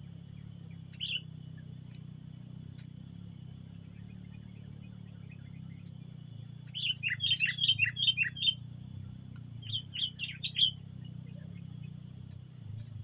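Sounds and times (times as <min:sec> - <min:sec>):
low background hum: 0:00.0 - 0:13.0
steady high whine: 0:00.0 - 0:13.0
bird whistling song: 0:00.6 - 0:01.7, 0:03.7 - 0:12.2.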